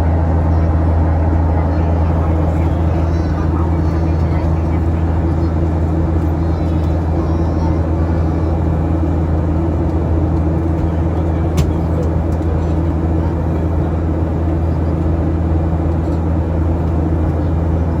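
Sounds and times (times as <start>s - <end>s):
vehicle engine drone: 0.0s - 18.0s.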